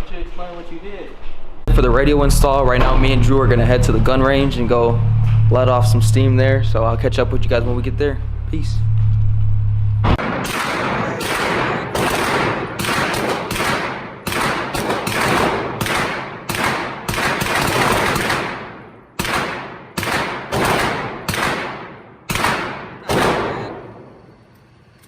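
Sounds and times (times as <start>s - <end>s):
gunshots echoing: 10.2s - 24.4s.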